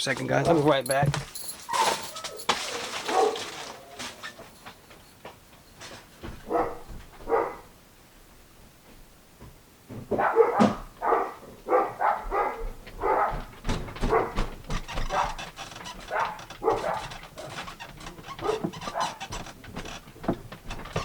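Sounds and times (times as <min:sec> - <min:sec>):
dogs barking: 0:01.6 - 0:04.0, 0:06.4 - 0:07.8, 0:10.1 - 0:19.3.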